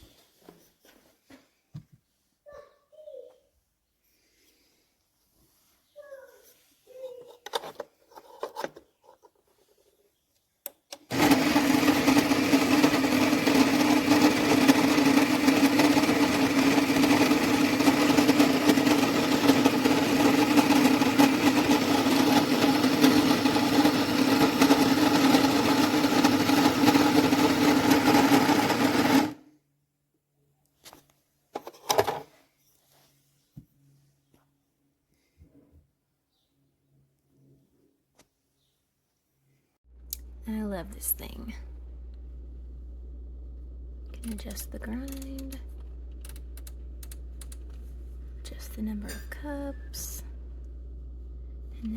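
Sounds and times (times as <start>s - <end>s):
coffee grinder grinding beans: 11.0s - 29.4s.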